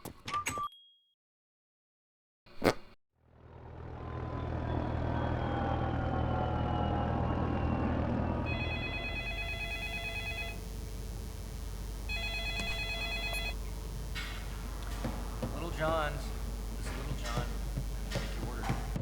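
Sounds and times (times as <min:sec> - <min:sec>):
low rumble with falling whine: 0:03.4 - 0:19.0
telephone ringing: 0:08.4 - 0:19.0.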